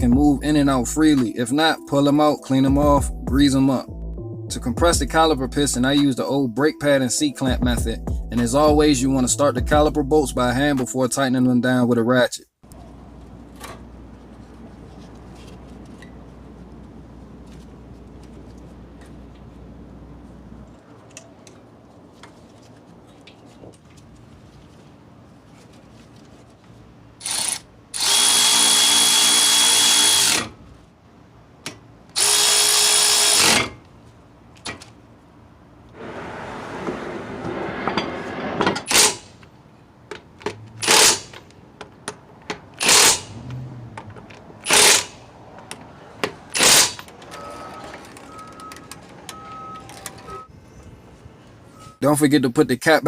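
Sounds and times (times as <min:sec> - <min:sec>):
power tool whining: 0:27.2 - 0:30.6, 0:32.1 - 0:33.8, 0:40.6 - 0:41.5, 0:42.8 - 0:45.2.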